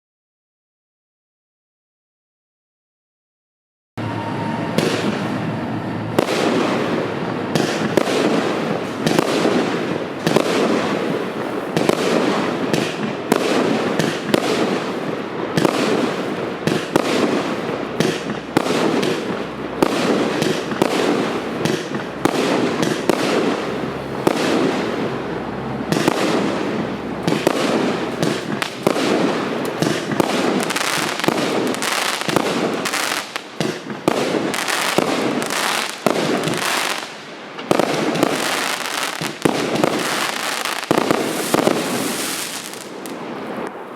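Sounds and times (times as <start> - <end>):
firework cake bangs: 25.9 - 37.0.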